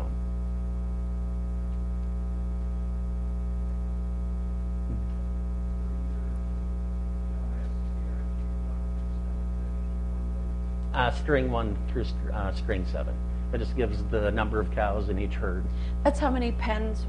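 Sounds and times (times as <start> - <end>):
electrical mains hum: 0.0 - 17.0
faint voices: 4.9 - 10.7.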